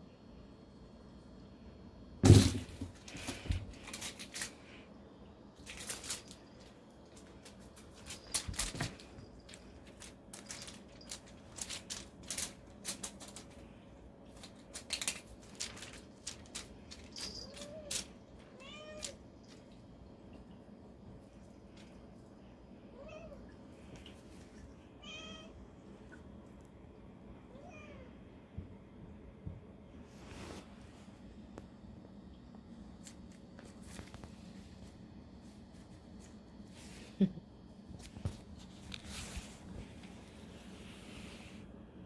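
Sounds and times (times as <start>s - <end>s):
cat meowing: 18.5s - 19.2s, 25.0s - 25.5s.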